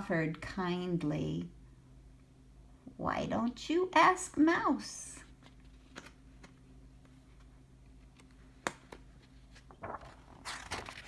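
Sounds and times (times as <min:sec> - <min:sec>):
book page turning: 0:05.3 - 0:11.0.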